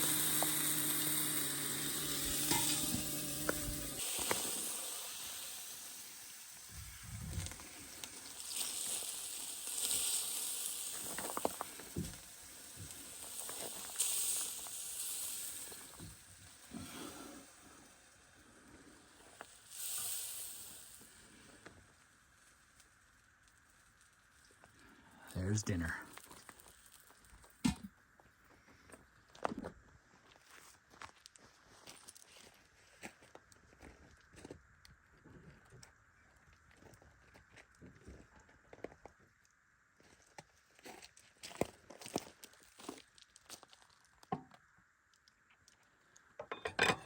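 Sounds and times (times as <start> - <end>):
steak sizzling in a skillet: 0.0 - 24.6.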